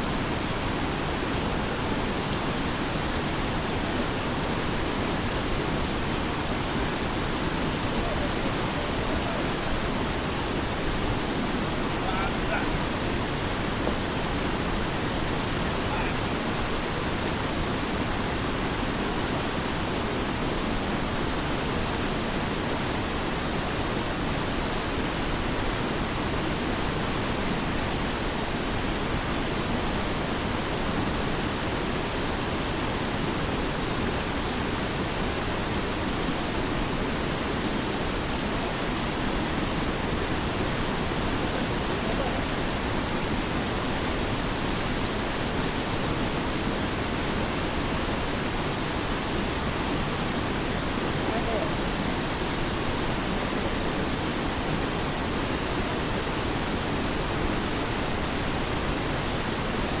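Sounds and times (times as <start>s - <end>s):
waterfall rushing: 0.0s - 60.0s.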